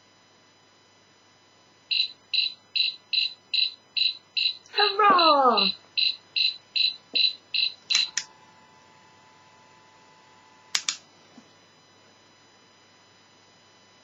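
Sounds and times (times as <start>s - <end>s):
high electronic cricket beeps: 1.9s - 8.3s
sharp clicks: 7.9s - 8.3s, 10.8s - 11.0s.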